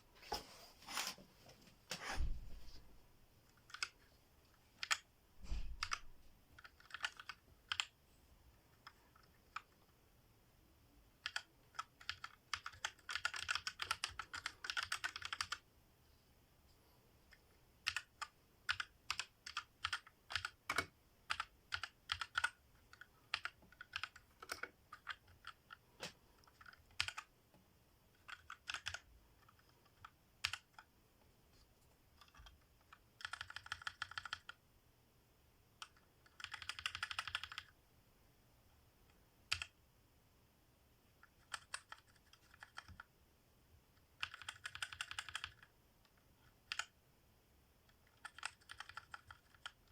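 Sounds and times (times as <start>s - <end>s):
mechanical keyboard typing: 3.6s - 4.0s, 4.8s - 8.0s, 11.2s - 15.6s, 17.8s - 27.3s, 28.1s - 30.9s, 32.2s - 34.6s, 35.8s - 37.8s, 39.5s - 39.8s, 41.2s - 43.1s, 44.1s - 47.0s, 47.9s - 49.9s.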